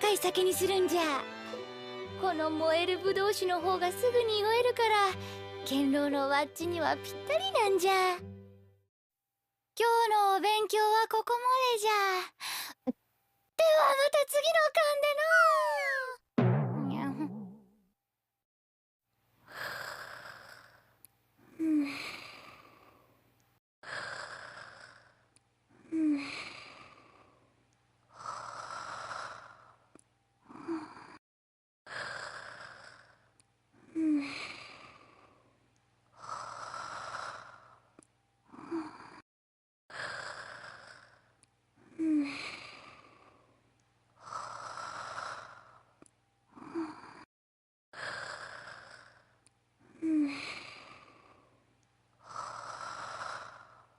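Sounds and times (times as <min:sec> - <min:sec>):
woman snoring cartoonishly: 0:19.5 - 0:23.1, 0:23.8 - 0:27.5, 0:28.1 - 0:31.2, 0:31.9 - 0:35.5, 0:36.1 - 0:39.2, 0:39.9 - 0:43.6, 0:44.2 - 0:45.9, 0:46.5 - 0:47.3, 0:47.9 - 0:51.6, 0:52.2 - 0:53.9.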